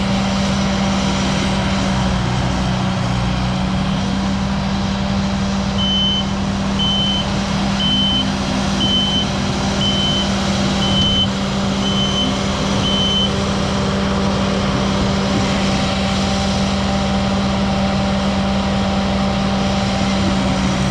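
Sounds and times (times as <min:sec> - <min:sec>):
loader engine running: 0:00.0 - 0:20.9
reversing alarm beeps: 0:05.8 - 0:13.4.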